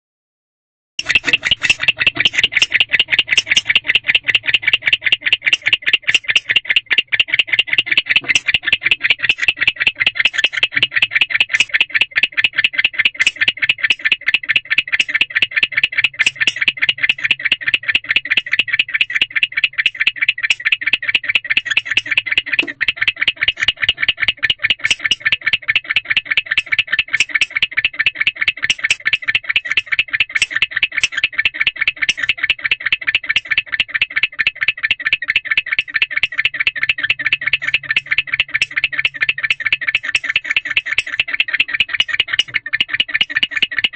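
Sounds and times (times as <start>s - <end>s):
barn owl chirping: 13.2s - 43.9s.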